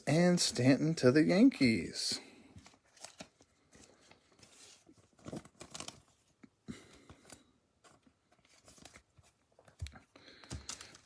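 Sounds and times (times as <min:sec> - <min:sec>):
wrapper crinkling and rustling: 0:02.6 - 0:06.4, 0:08.0 - 0:11.0.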